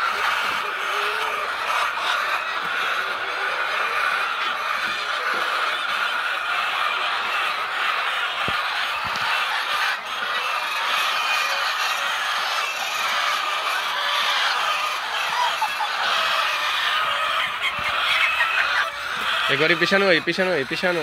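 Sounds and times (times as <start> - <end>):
flock of fowl honking and clucking: 0.0 - 21.0.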